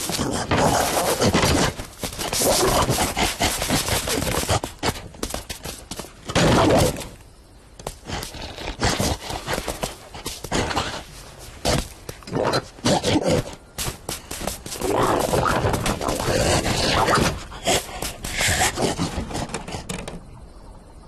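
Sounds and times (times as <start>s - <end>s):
cartoon clattering knocks and scrapes: 0.0s - 7.2s, 13.4s - 20.3s.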